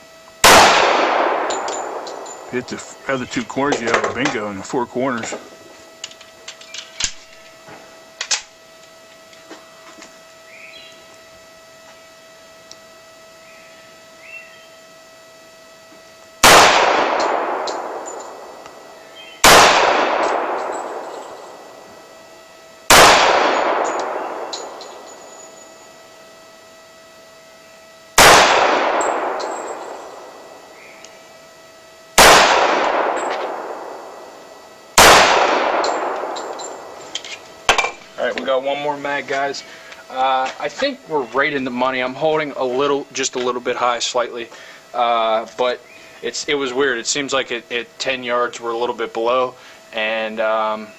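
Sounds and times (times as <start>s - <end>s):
pistol shots with echo: 0.4s - 2.8s, 16.4s - 21.8s, 22.9s - 25.2s, 28.2s - 30.8s, 32.2s - 37.0s.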